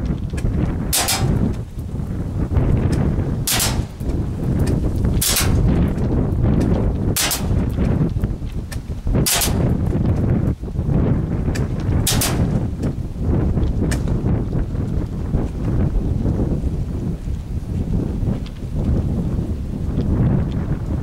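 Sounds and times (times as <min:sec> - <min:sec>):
wind rumble on microphone: 0:00.0 - 0:21.0
airsoft shotgun firing: 0:00.9 - 0:01.5, 0:03.5 - 0:04.0, 0:05.2 - 0:05.6, 0:07.2 - 0:07.6, 0:09.2 - 0:09.7, 0:12.0 - 0:12.6.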